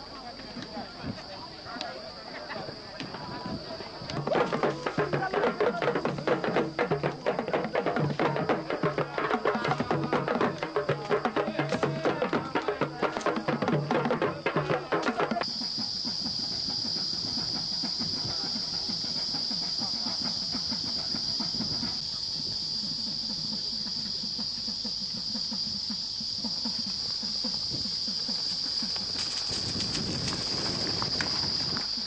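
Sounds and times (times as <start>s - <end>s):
insects buzzing: 0.0s - 32.0s
drum-like percussion music: 4.2s - 29.0s.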